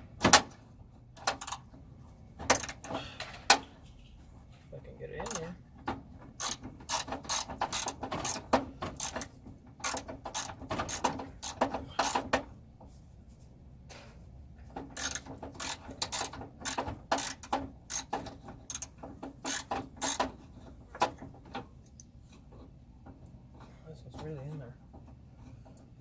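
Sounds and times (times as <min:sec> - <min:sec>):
ratchet wrench clicking: 0:01.2 - 0:01.6, 0:05.2 - 0:05.5, 0:06.4 - 0:08.4, 0:09.0 - 0:12.2, 0:15.0 - 0:20.3.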